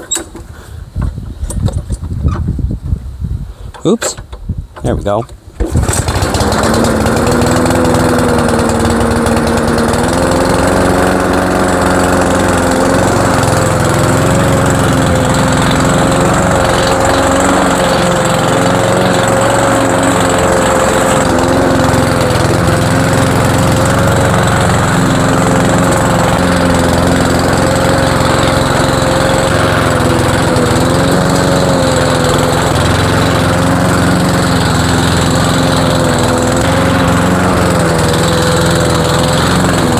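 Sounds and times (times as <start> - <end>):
lawn mower engine running: 5.5 - 39.9.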